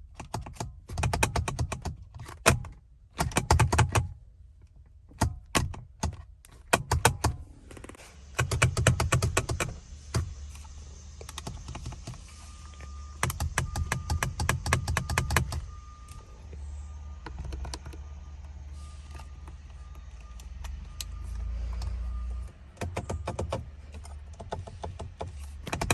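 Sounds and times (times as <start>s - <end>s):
sharp clicks in car: 0.1s - 16.6s, 17.2s - 18.6s, 19.2s - 25.9s
faint high beep: 12.1s - 22.5s.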